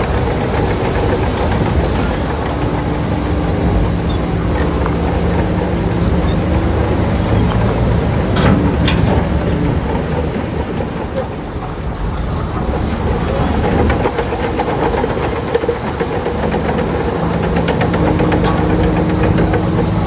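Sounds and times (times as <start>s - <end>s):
heavy diesel engine running: 0.0s - 20.0s
sharp metal clanks: 8.2s - 11.4s.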